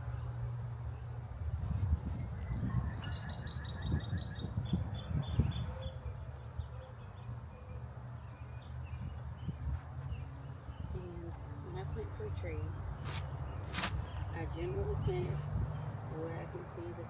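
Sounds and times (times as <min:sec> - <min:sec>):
wind rumble on microphone: 0:01.3 - 0:06.3, 0:08.7 - 0:17.0.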